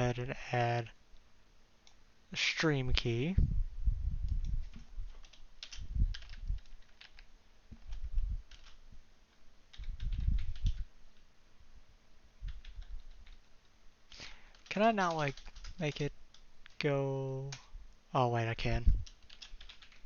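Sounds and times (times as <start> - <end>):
typing on a keyboard: 4.4 - 8.8, 9.7 - 11.3, 12.5 - 13.5, 14.4 - 16.8, 19.0 - 20.0.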